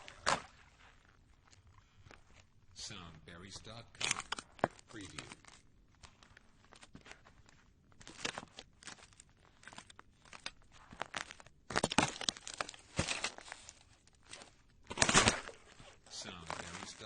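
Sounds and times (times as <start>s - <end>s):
footsteps crunching on ice: 15.6s - 17.0s.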